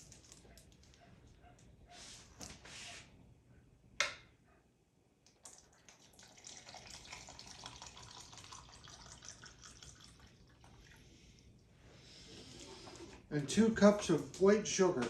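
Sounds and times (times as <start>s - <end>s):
liquid pouring into container: 5.3s - 11.5s, 12.3s - 13.3s.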